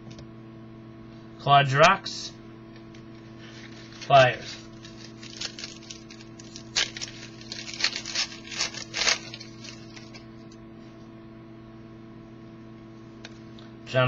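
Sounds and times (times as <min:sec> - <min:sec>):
low electrical hum: 0:00.0 - 0:14.0
trading cards rustling: 0:03.4 - 0:10.3.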